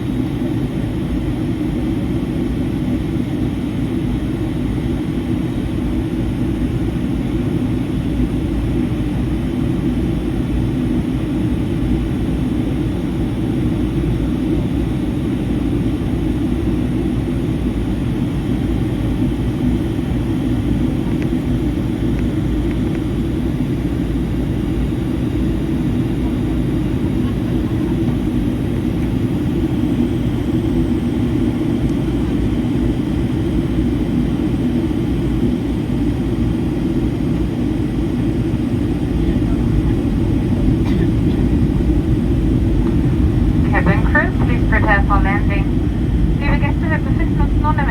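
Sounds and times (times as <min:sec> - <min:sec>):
airplane cabin engine drone: 0:00.0 - 0:47.9.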